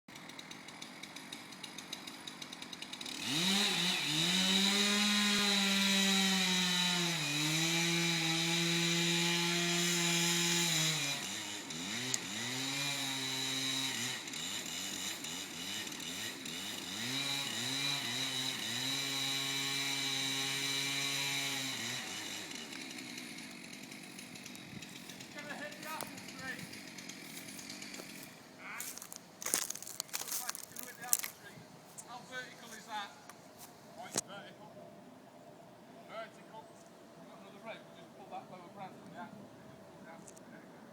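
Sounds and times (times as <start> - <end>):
chainsaw engine revving: 0.1 - 31.4.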